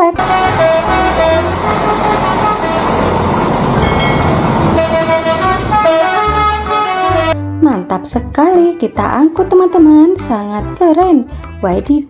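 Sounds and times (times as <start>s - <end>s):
multi-tone bus horn tune: 0.0s - 7.5s
loud rushing noise: 0.2s - 7.2s.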